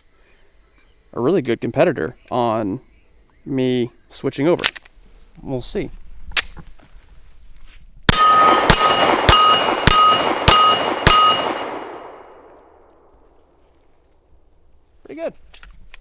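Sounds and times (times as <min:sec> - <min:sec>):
steel target ringing: 0:08.1 - 0:12.5
pistol shots: 0:08.1 - 0:12.6.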